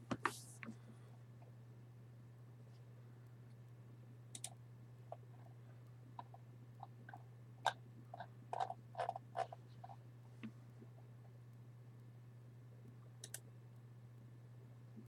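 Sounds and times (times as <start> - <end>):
low electrical hum: 0.0 - 15.0
mouse and keyboard clicks: 4.4 - 4.6.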